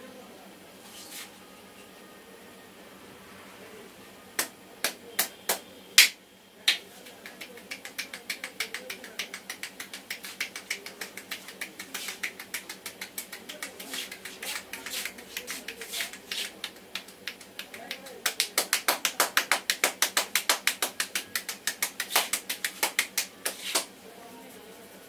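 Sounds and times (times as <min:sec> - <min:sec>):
hands slapping and tapping head: 0:04.4 - 0:23.9.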